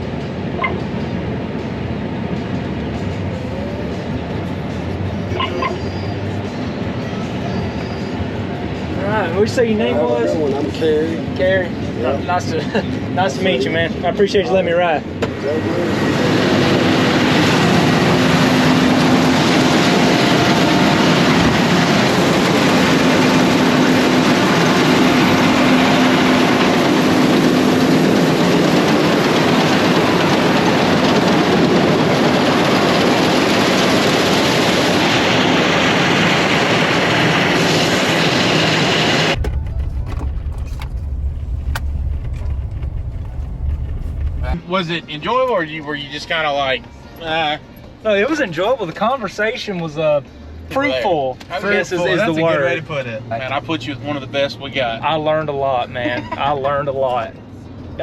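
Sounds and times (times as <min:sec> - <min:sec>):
harvest machinery running: 0:16.2 - 0:44.6
low rumble: 0:39.1 - 0:44.6.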